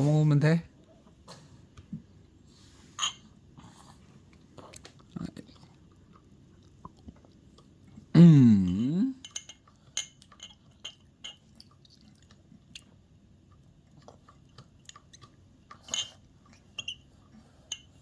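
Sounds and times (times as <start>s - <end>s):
baby chewing and lip smacking: 9.6s - 18.0s.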